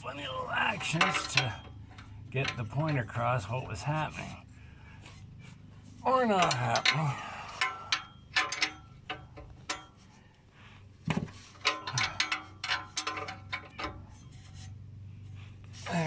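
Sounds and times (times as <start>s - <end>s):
hand tools clicking and clinking on metal: 0.0s - 16.0s.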